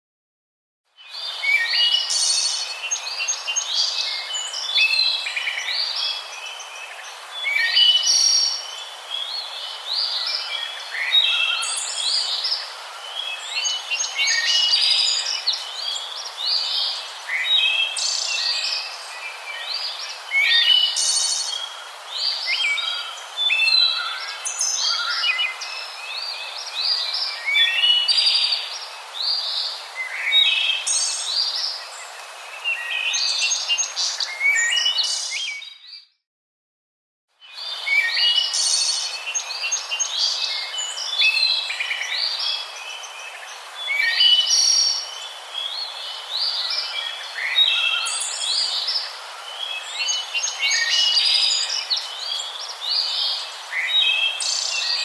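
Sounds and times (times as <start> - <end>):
small birds chirping: 37.4 - 55.0.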